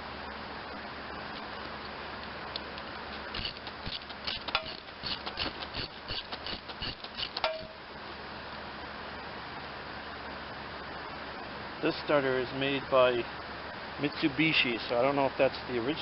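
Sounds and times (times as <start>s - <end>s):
sharp ringing metal clinks: 7.4s - 7.8s.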